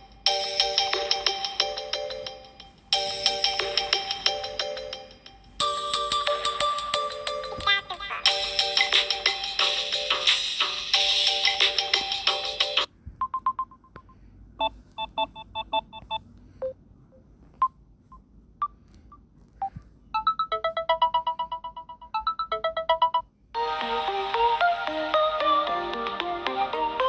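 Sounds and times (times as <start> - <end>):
melodic ringtone: 0.0 - 13.6, 20.2 - 27.0.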